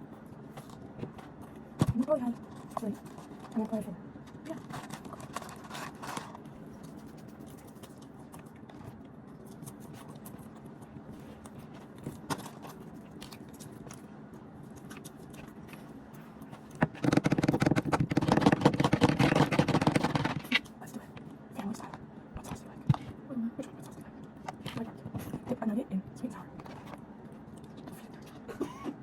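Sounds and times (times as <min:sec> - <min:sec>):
loud crunching while eating: 0:04.4 - 0:20.7.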